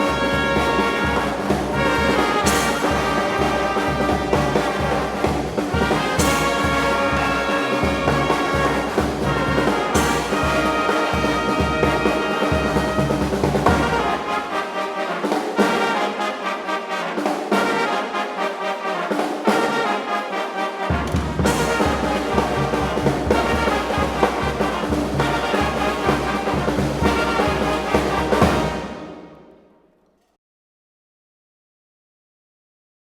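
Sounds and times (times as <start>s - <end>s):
steady drum beat: 0.0s - 14.6s, 20.9s - 29.1s
trumpets and trombones: 0.0s - 29.6s.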